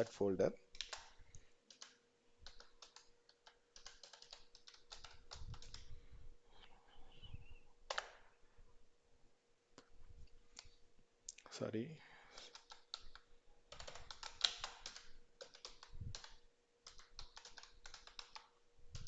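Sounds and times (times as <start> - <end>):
keyboard keys clicking: 0.7 - 5.9, 12.3 - 19.0.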